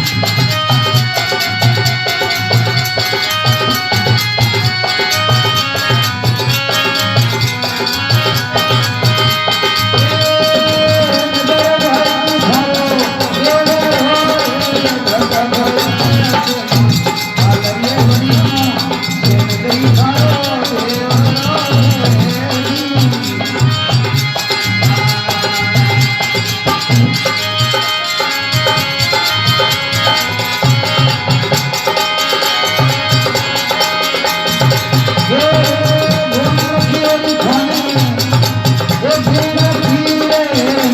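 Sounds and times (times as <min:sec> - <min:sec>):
drum beat: 0:00.0 - 0:40.9
pitched melody line: 0:00.0 - 0:40.9
rattling percussion: 0:00.0 - 0:40.9.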